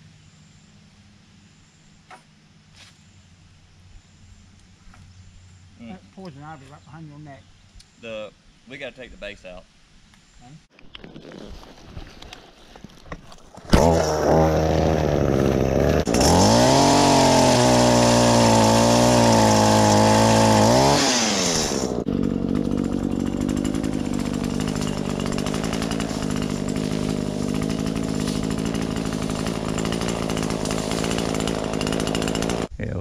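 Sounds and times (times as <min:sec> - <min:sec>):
chainsaw engine revving and idling: 0:13.7 - 0:32.7.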